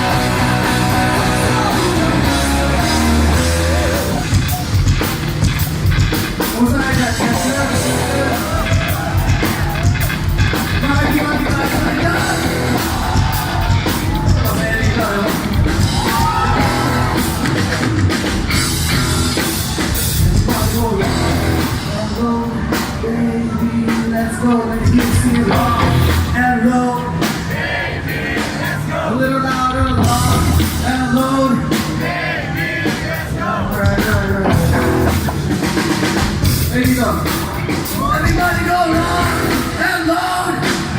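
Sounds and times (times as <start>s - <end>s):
person singing and shouting: 0.0s - 4.8s, 6.5s - 10.0s, 10.7s - 17.7s, 36.8s - 40.9s
driving drum beat: 0.0s - 40.9s
loud electric guitars: 0.0s - 40.9s.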